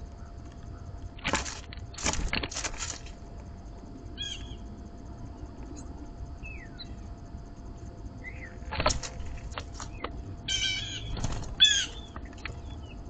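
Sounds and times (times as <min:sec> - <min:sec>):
bird wings flapping: 0:01.2 - 0:03.1, 0:08.7 - 0:09.9, 0:11.1 - 0:12.6
faint bird chirps: 0:04.2 - 0:04.7, 0:05.7 - 0:07.1, 0:08.2 - 0:08.6.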